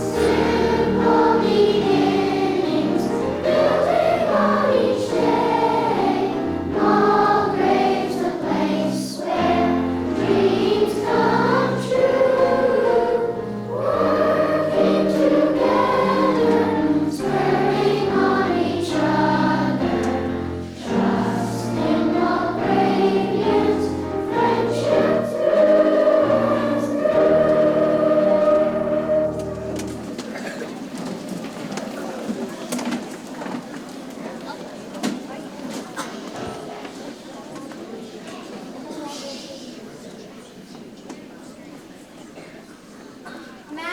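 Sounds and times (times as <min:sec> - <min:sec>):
group of voices singing: 0:00.0 - 0:30.1
instrumental accompaniment: 0:00.0 - 0:30.4.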